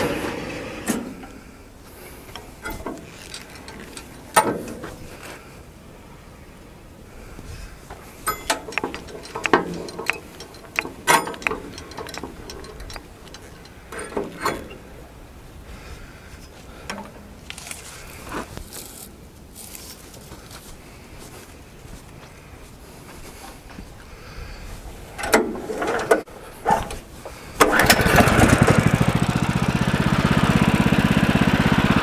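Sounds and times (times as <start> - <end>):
metal parts clicking and knocking: 2.1 - 5.3, 7.8 - 15.0.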